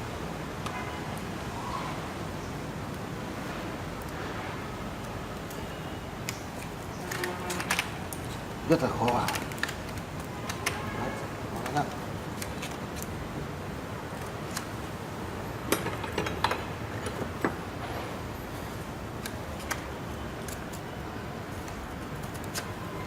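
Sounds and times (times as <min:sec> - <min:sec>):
low background noise: 0:00.0 - 0:23.0
wire clicking into motor slots: 0:06.2 - 0:10.9.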